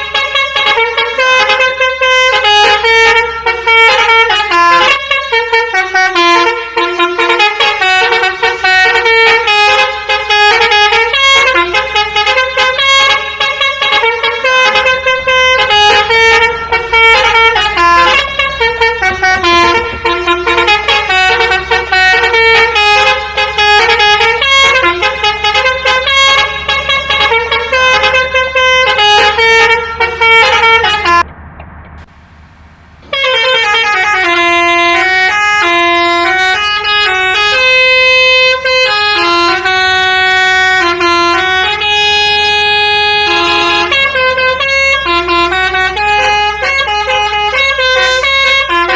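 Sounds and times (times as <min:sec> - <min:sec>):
musical bus air horn: 0:00.0 - 0:31.2, 0:33.0 - 0:48.9.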